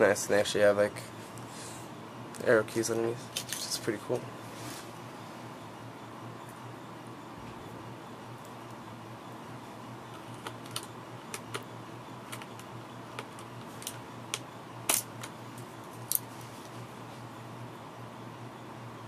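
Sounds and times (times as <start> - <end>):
keyboard plastic clicks: 12.3 - 15.0.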